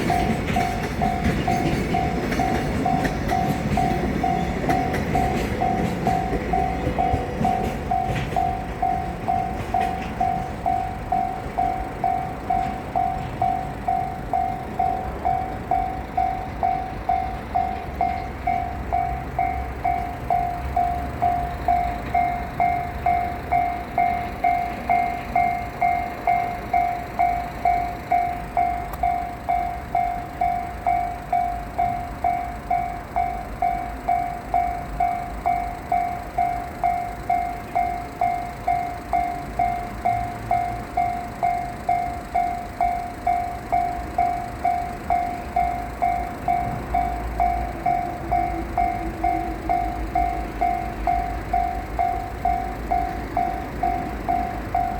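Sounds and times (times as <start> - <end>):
freight train rumble: 0.0 - 54.9
level-crossing alarm ringing: 0.0 - 54.9.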